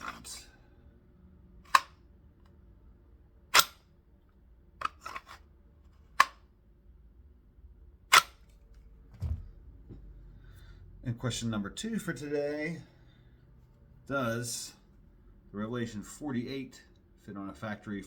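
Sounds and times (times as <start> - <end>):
pistol snapping into holster clicks: 3.5 - 3.8, 8.1 - 8.4
dull thump: 9.1 - 10.1.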